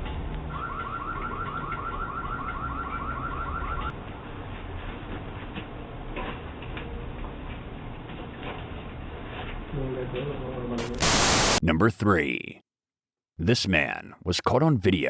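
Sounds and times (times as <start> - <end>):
electronic alarm siren sweeping: 0.5 - 3.9.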